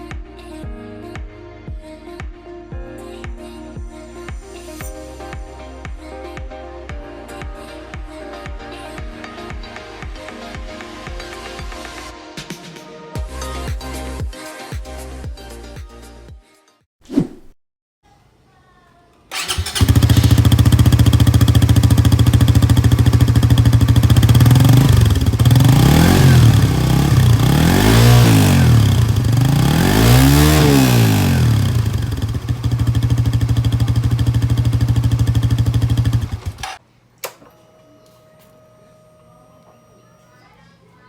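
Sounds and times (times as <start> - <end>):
motorcycle engine idling and revving: 19.3 - 36.8.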